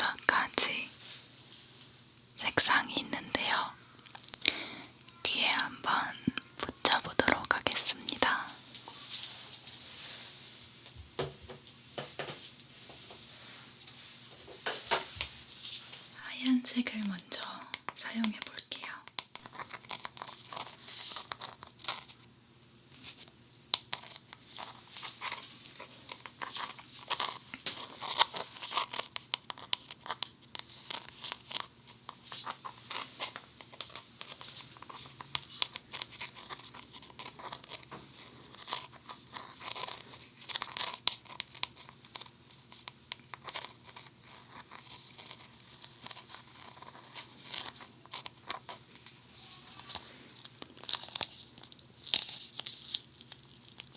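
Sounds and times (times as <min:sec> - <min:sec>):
foam clay crackling and popping: 0:19.1 - 0:22.2, 0:23.0 - 0:53.9.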